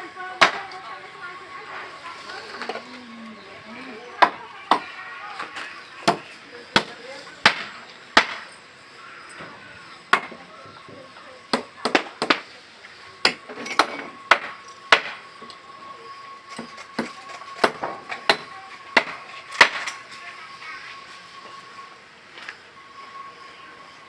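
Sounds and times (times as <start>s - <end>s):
faint steady high tone: 0.0s - 7.9s, 12.5s - 24.0s
hand tool striking wood: 6.8s - 8.5s.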